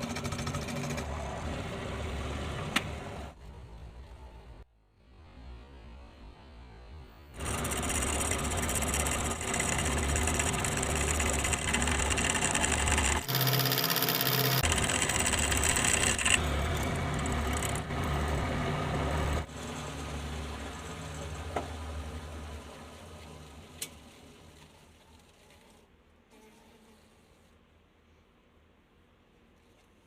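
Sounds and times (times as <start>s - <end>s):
power tool motor hum: 7.4s - 16.5s
gritty metal cutting noise: 7.4s - 21.1s.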